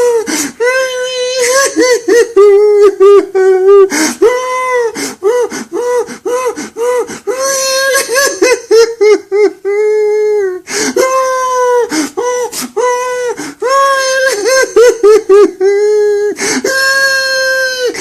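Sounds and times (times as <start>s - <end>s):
man wailing and sobbing: 0.0s - 18.0s
sharp gasping breaths: 0.3s - 0.6s, 10.6s - 11.0s, 11.9s - 12.8s, 16.4s - 16.7s.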